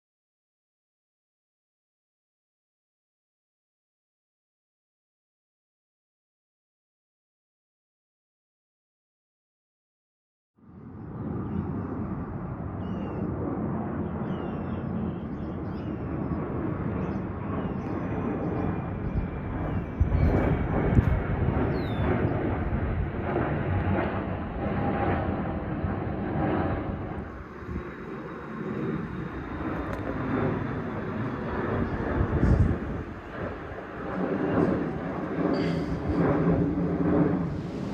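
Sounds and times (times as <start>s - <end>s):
air tanker flying over: 10.7s - 37.9s
faint bird chirps: 12.8s - 13.2s, 14.1s - 16.1s.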